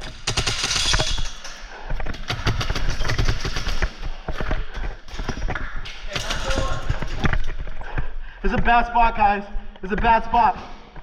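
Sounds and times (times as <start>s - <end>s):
airsoft guns firing: 0.0s - 1.2s, 2.1s - 4.2s.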